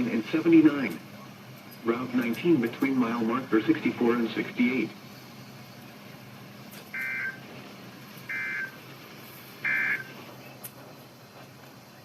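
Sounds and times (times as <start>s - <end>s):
data tone bursts: 7.0s - 7.4s, 8.3s - 8.8s, 9.6s - 10.2s.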